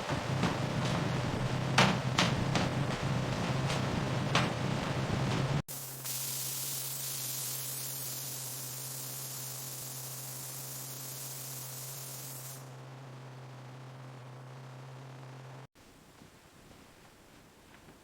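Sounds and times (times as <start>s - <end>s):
knocks: 0.1s - 5.5s
steady hiss: 5.7s - 12.7s
low even hum: 12.5s - 18.0s.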